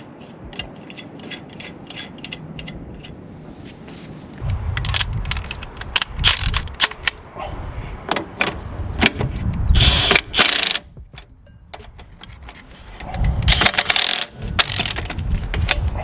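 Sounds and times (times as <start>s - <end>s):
tools and metal parts clanking: 0.0s - 3.9s, 4.7s - 7.2s, 7.9s - 16.0s.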